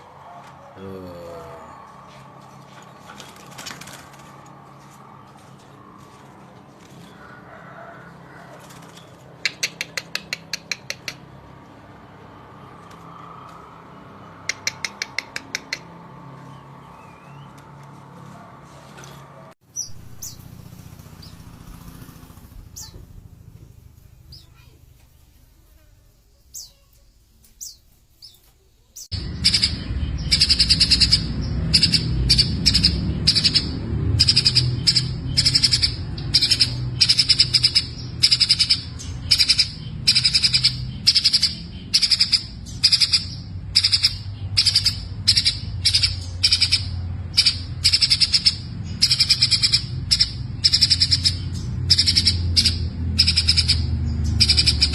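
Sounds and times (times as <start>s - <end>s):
sunbirds twittering: 19.6s - 54.9s.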